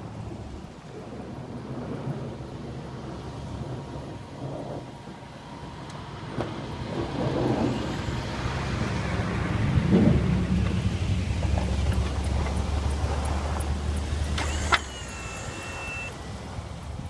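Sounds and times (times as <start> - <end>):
pickup engine rumbling: 0.0 - 17.0.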